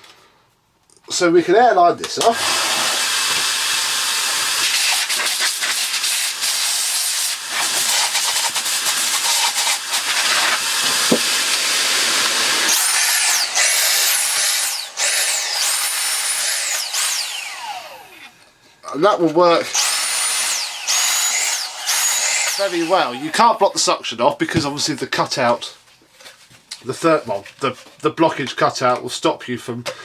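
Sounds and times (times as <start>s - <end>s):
compressed air hissing: 4.6s - 14.6s.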